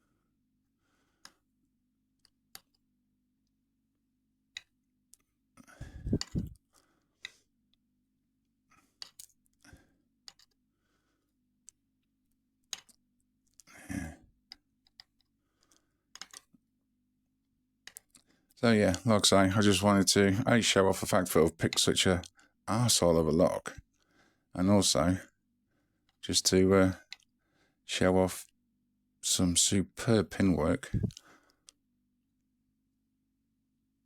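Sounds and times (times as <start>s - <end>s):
lock parts clicking and tapping: 16.2s - 16.5s.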